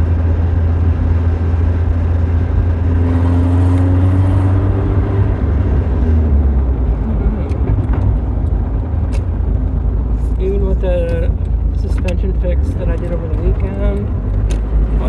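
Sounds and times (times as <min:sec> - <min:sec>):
car engine pulling: 0:00.0 - 0:15.0
low road rumble: 0:00.0 - 0:15.0.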